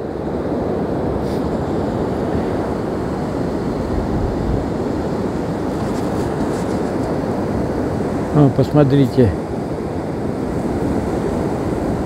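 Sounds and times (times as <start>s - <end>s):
stormy sea surf: 0.0s - 12.0s
wind rushing over microphone: 0.3s - 8.6s.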